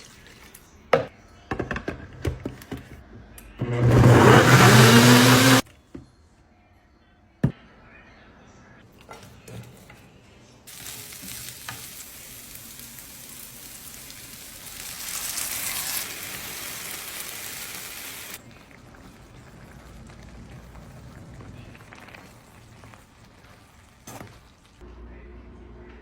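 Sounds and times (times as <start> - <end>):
food frying in hot oil: 10.7 - 24.8.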